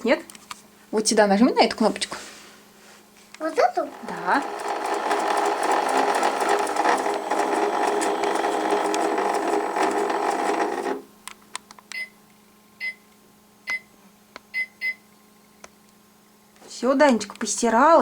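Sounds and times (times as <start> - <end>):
small motor whirring: 3.8 - 11.1.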